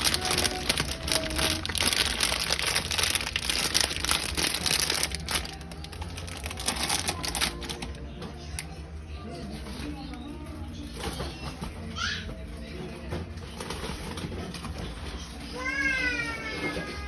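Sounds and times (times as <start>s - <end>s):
plastic packaging crinkling: 0.0s - 8.7s
small clicks and rattles: 0.0s - 8.7s.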